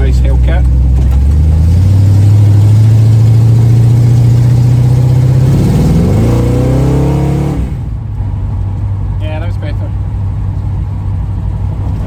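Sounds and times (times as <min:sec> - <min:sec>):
car engine revving under load: 0:00.0 - 0:09.0.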